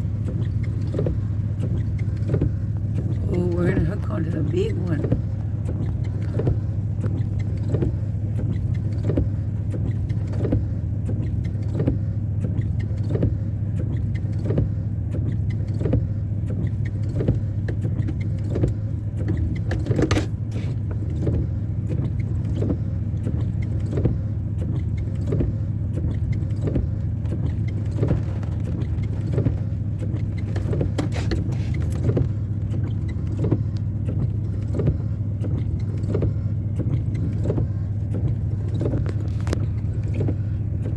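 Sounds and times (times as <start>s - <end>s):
engine humming with regular beat: 0.0s - 40.9s.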